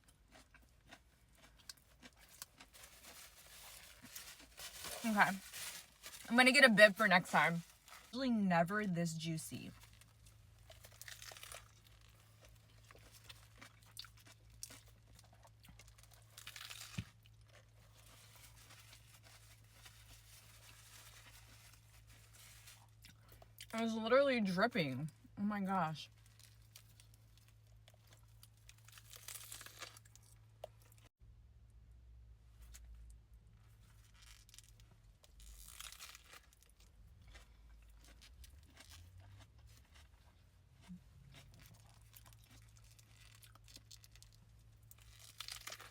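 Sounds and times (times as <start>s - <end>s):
chewing and crunching food: 0.0s - 6.6s, 9.4s - 23.9s, 26.0s - 31.1s, 32.6s - 45.9s
low steady hum: 0.0s - 45.9s
wrapper rustle: 2.7s - 6.3s, 18.0s - 23.0s
paper wrapper crinkling: 2.7s - 6.6s, 18.0s - 23.0s.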